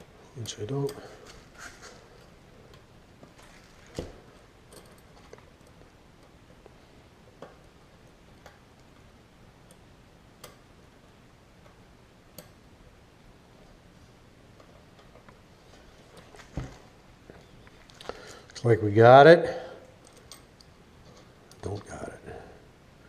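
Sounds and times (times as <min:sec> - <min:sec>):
metal bicycle cogs clicking: 0:03.4 - 0:06.4.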